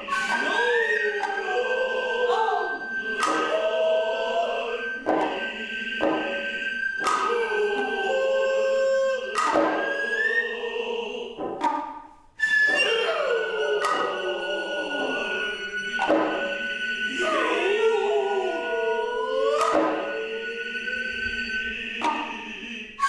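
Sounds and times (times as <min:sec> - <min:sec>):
drum strokes: 0:00.0 - 0:08.0, 0:09.2 - 0:10.6, 0:11.3 - 0:18.6, 0:19.5 - 0:23.0
bamboo flute high note: 0:00.0 - 0:08.3, 0:12.4 - 0:18.2
chanted singing: 0:00.0 - 0:11.6, 0:12.4 - 0:23.0.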